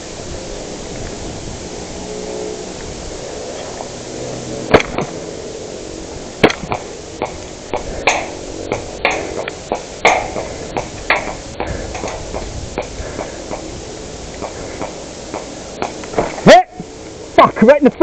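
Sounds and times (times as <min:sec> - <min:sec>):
airsoft gunshots: 0:04.7 - 0:05.2, 0:06.4 - 0:13.7.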